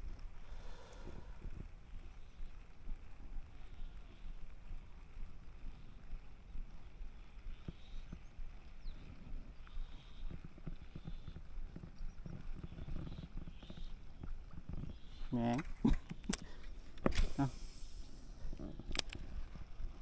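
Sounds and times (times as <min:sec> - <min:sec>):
wind buffeting microphone: 0:00.0 - 0:20.0
faint click: 0:18.9 - 0:19.3.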